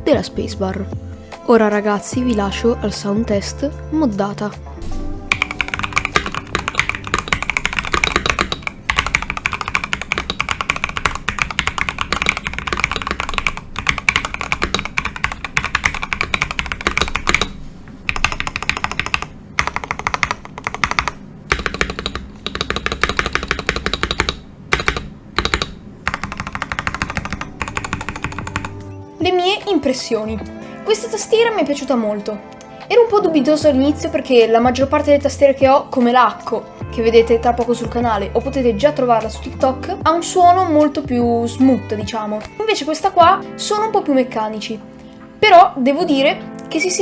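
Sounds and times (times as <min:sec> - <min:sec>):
mechanical keyboard key clacks: 0:05.3 - 0:28.7.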